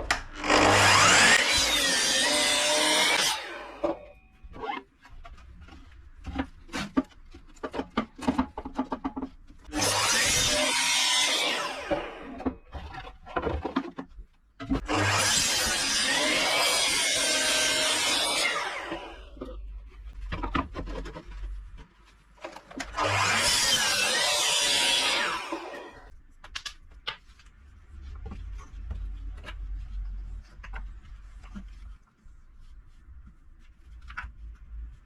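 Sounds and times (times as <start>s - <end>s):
tool rasping material: 9.6s - 13.6s, 14.8s - 19.5s.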